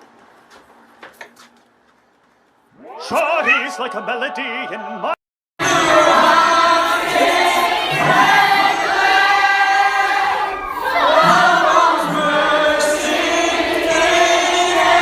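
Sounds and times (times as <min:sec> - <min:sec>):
group of voices singing: 0:02.8 - 0:15.0.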